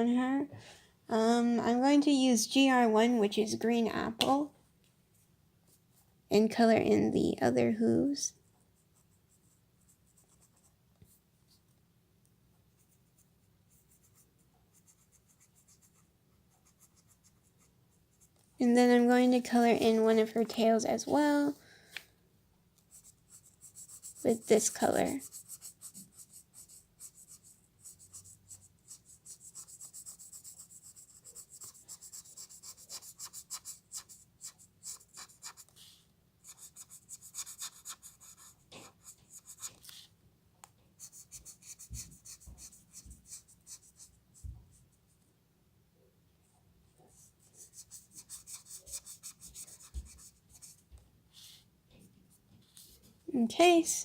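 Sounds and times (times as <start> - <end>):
marker scratching on paper: 12.8 - 18.4, 22.8 - 40.0, 41.0 - 44.4, 47.1 - 51.5.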